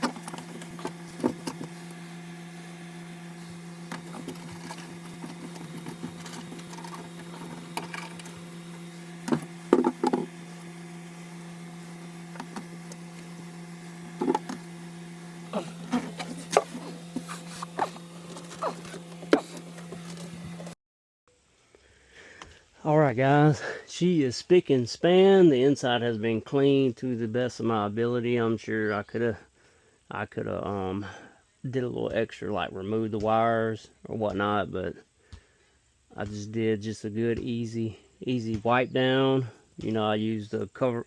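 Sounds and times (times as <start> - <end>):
steady low hum: 0.0 - 20.8.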